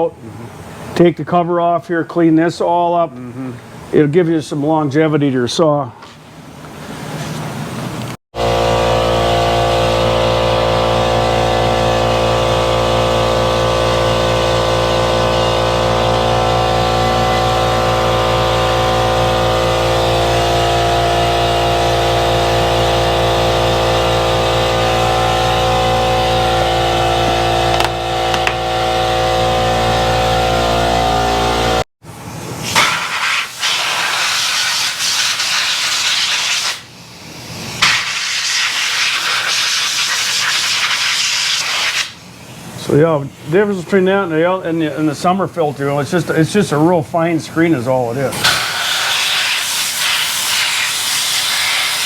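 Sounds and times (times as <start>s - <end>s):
air compressor motor running: 8.4s - 31.8s, 48.3s - 52.0s.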